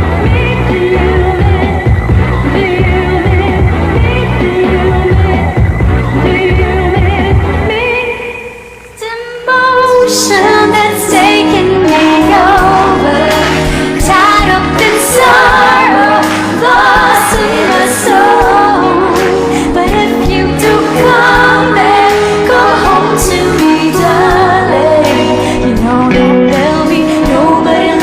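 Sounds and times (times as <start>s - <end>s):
woman singing pop song: 0.0s - 28.0s
band accompaniment: 11.1s - 27.7s.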